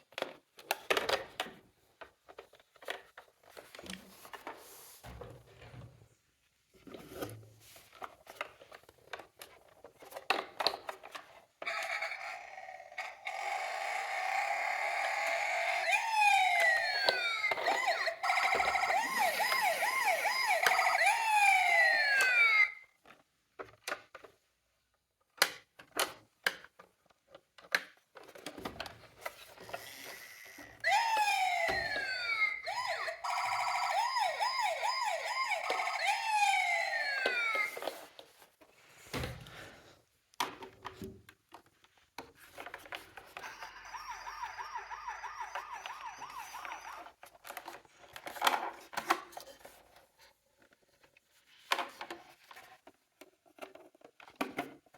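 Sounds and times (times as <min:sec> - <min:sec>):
toy sirens wailing and yelping: 0:11.6 - 0:23.0, 0:29.6 - 0:38.2, 0:43.2 - 0:48.4
fast warbling siren: 0:13.3 - 0:22.8, 0:30.8 - 0:37.8, 0:43.4 - 0:47.2.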